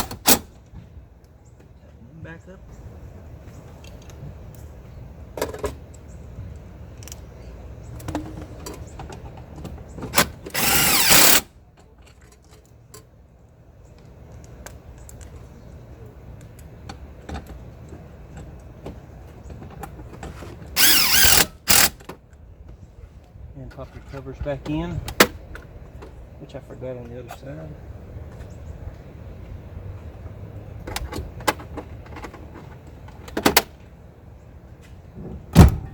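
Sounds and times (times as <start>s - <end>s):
power drill running: 10.5s - 11.4s, 20.8s - 22.0s.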